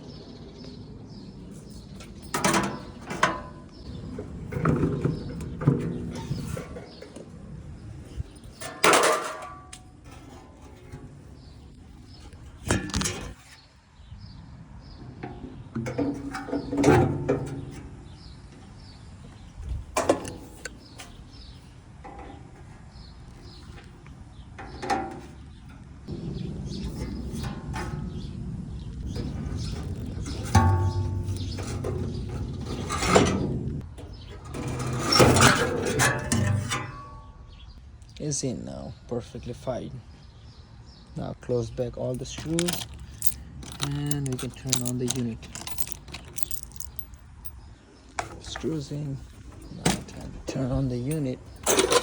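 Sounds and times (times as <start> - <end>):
birds chirping: 0.0 - 52.0
metal clanks and tool knocks: 2.0 - 3.8, 8.6 - 11.5, 12.6 - 13.6, 15.1 - 18.6, 20.0 - 21.1, 24.6 - 25.5, 30.3 - 33.4, 34.0 - 37.3, 42.1 - 47.6, 48.2 - 52.0
low rumble: 26.1 - 33.9
metallic clatters: 29.1 - 37.2, 42.0 - 52.0
metal rattling bursts: 42.1 - 47.7.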